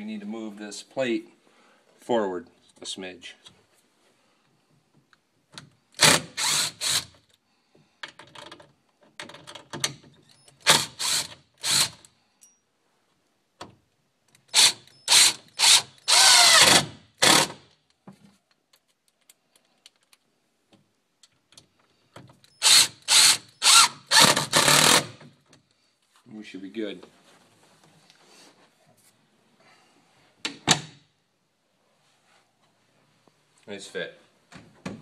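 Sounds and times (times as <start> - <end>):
cordless drill driver whirring: 6.0 - 7.1, 10.6 - 12.0, 14.5 - 17.6, 22.6 - 25.1.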